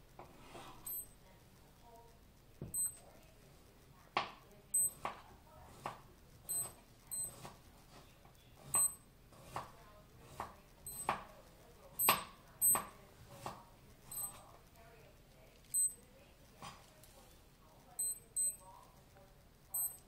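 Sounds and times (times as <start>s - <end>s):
wristwatch beeps: 0.8s - 1.2s, 2.7s - 3.0s, 4.7s - 5.0s, 6.4s - 7.4s, 8.7s - 9.1s, 10.8s - 11.2s, 12.0s - 13.0s, 14.0s - 14.4s, 15.6s - 16.1s, 18.0s - 18.7s, 19.7s - 20.0s.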